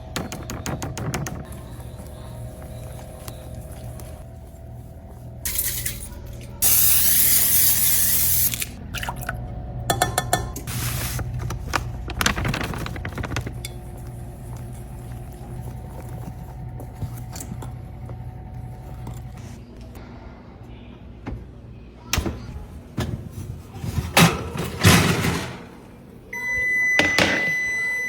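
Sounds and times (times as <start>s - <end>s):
kitchenware clattering: 9.9s - 10.7s, 23.0s - 25.9s.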